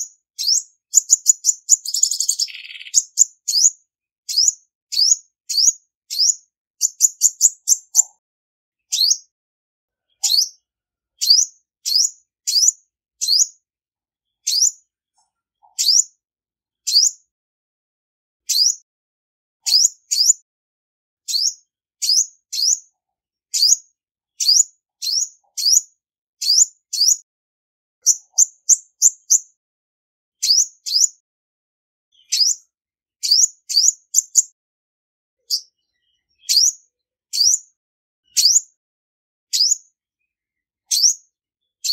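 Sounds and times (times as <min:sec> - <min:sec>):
bird high-pitched chips: 0:00.4 - 0:03.7, 0:04.3 - 0:08.1, 0:08.9 - 0:09.3, 0:10.2 - 0:10.6, 0:11.2 - 0:13.6, 0:14.5 - 0:14.8, 0:15.6 - 0:16.1, 0:18.5 - 0:18.8, 0:19.7 - 0:20.4, 0:21.3 - 0:22.8, 0:24.4 - 0:27.2, 0:28.0 - 0:29.4, 0:30.4 - 0:31.1, 0:32.2 - 0:32.6, 0:33.2 - 0:34.5, 0:36.4 - 0:37.6, 0:38.3 - 0:38.6, 0:39.5 - 0:39.8, 0:40.9 - 0:41.2.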